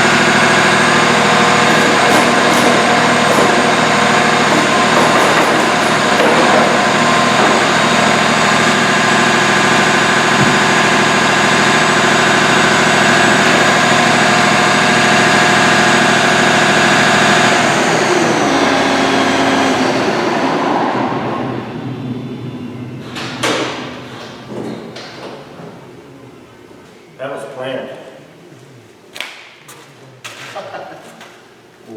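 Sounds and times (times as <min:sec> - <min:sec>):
engine running and winding down: 0:00.0 - 0:23.7
sharp knocks: 0:01.6 - 0:08.6.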